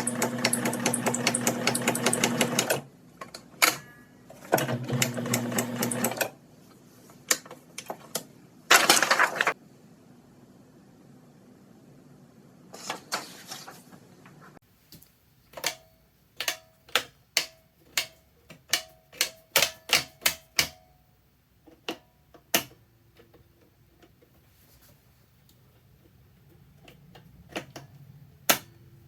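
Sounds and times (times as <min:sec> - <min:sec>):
sewing machine mechanical clicks: 0:00.0 - 0:02.8, 0:04.5 - 0:06.4.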